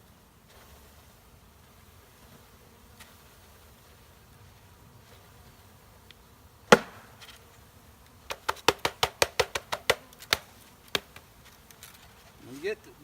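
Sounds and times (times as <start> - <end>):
honeybees buzzing: 0.0 - 13.0
box knocking against hive: 6.7 - 7.2, 8.3 - 11.3.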